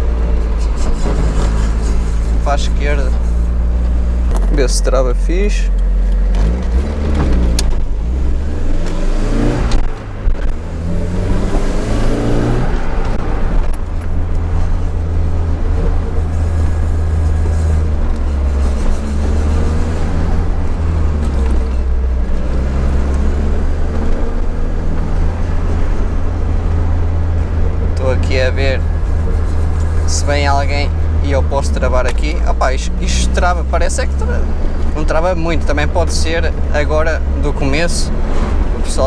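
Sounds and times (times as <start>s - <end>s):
car engine revving from inside cabin: 6.1s - 13.7s, 16.4s - 25.2s.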